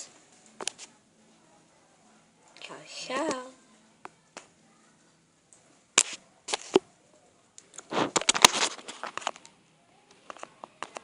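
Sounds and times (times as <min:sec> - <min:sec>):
crackling rustling clatter: 0:07.6 - 0:09.6.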